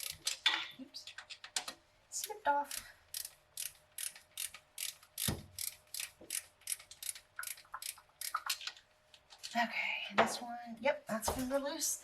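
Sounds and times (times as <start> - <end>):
hand ratchet clicking: 2.6 - 8.6.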